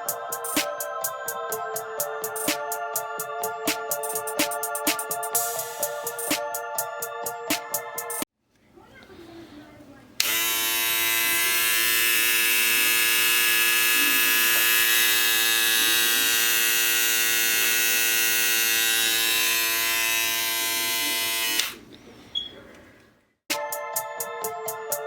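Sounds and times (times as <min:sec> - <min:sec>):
electric hair clipper buzzing: 0:10.2 - 0:21.8.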